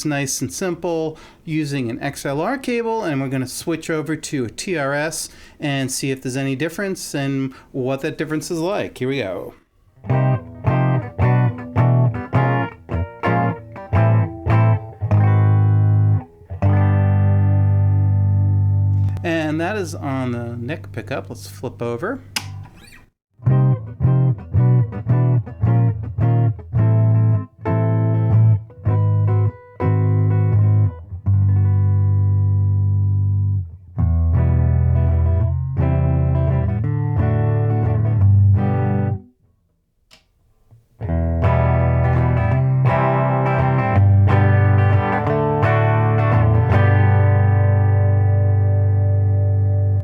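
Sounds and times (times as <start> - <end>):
electric guitar chords: 10.0 - 19.6, 23.4 - 39.2, 41.0 - 50.0.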